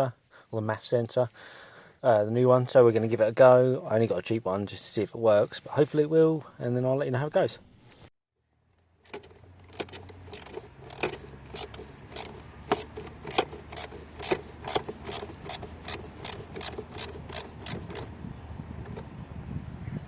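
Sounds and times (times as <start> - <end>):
ratchet wrench clicking: 9.1 - 18.1.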